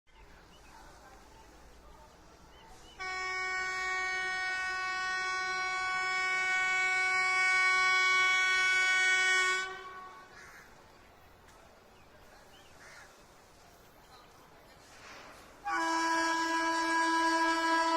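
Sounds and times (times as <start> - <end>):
locomotive air horn blast: 3.0 - 10.3, 15.6 - 17.9.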